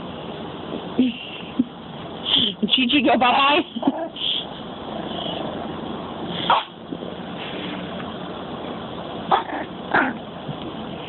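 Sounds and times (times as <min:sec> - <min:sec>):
puppy yipping: 0:06.4 - 0:06.8, 0:09.3 - 0:10.2.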